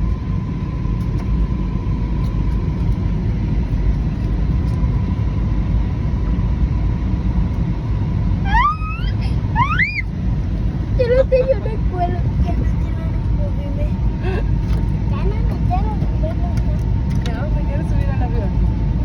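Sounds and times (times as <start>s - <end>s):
airliner cabin rumble: 0.0s - 19.0s
faint steady whine: 0.0s - 19.0s
short rising squeals: 8.4s - 10.1s.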